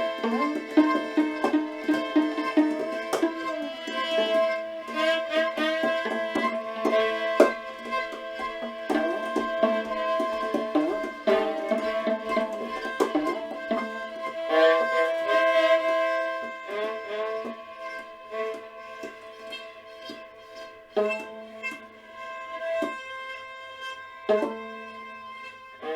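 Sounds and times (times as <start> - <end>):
sharp percussive strikes: 5.8 - 13.8.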